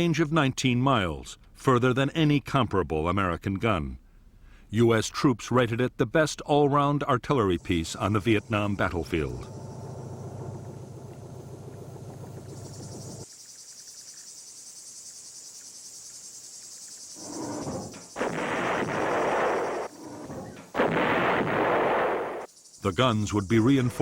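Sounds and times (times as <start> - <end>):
steady high-pitched buzz: 7.5 - 13.3
artillery guns firing: 18.2 - 22.5.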